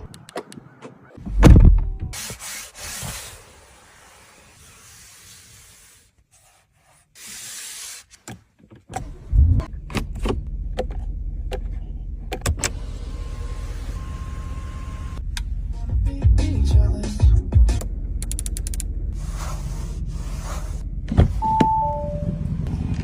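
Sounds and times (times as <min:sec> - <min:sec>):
car low running sound: 0:09.0 - 0:23.0
sharp clicks: 0:17.8 - 0:18.9.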